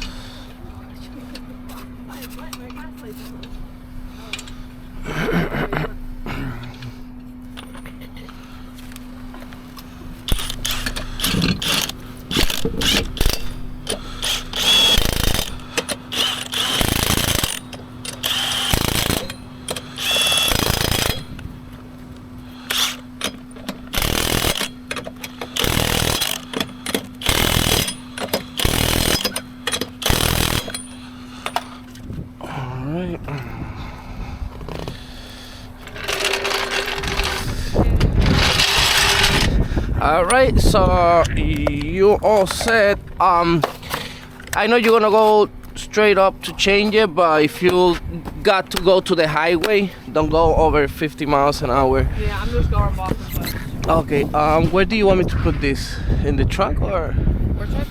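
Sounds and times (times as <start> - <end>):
steady low hum: 0.0 - 57.9
impact wrench hammering: 10.3 - 21.5, 22.6 - 31.8, 35.8 - 37.6.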